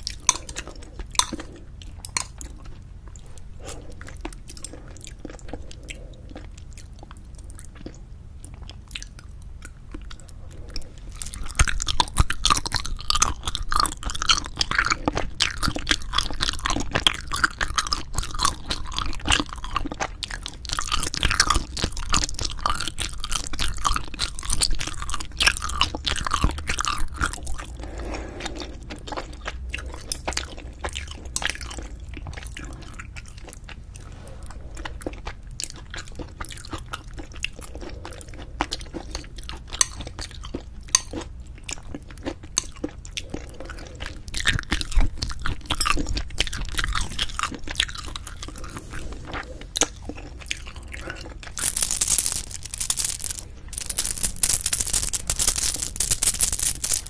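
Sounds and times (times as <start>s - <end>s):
chewing with wet mouth smacks: 0.0s - 52.2s.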